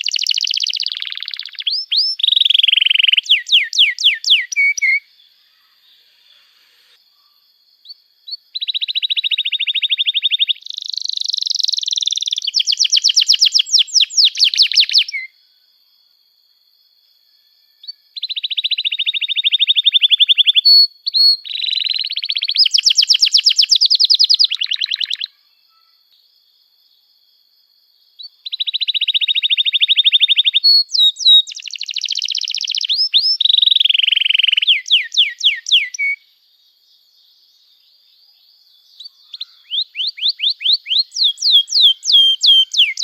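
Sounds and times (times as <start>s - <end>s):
canary singing: 0.0s - 7.0s, 7.8s - 15.3s, 17.8s - 25.9s, 28.4s - 36.2s, 38.9s - 43.0s.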